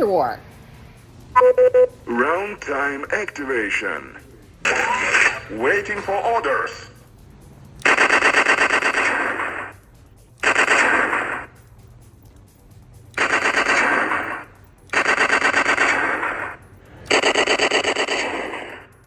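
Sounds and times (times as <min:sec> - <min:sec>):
electronic laser gun bursts: 0:04.6 - 0:07.0, 0:07.8 - 0:09.8, 0:10.4 - 0:11.6, 0:13.2 - 0:19.0.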